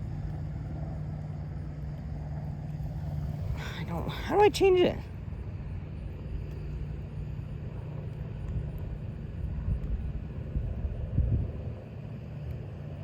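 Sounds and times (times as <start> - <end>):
low outdoor rumble: 0.0 - 13.0.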